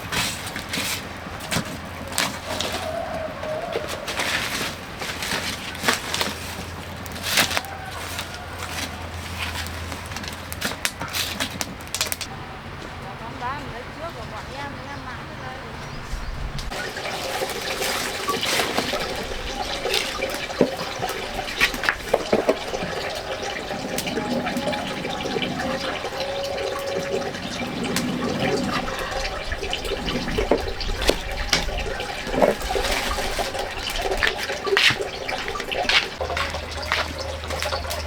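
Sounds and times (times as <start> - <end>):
water running and splashing: 0.0 - 12.3, 16.5 - 38.0.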